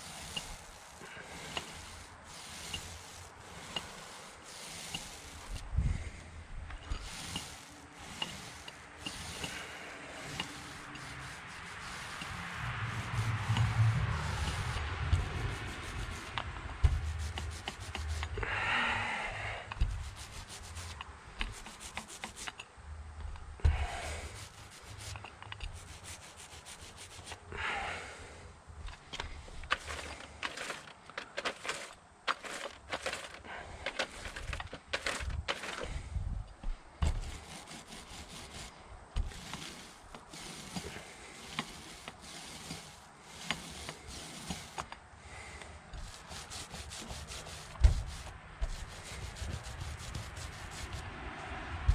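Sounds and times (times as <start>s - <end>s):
paint roller rubbing: 0.0s - 6.2s, 6.9s - 18.4s, 19.8s - 22.6s, 23.7s - 27.5s, 29.4s - 36.1s, 37.0s - 51.2s
sharp clicks and knocks: 10.3s - 18.4s, 19.7s - 23.9s.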